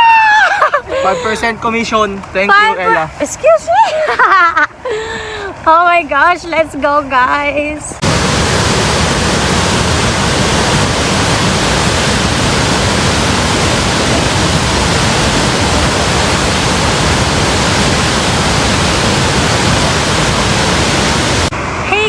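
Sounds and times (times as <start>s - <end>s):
waterfall rushing: 8.0s - 21.5s.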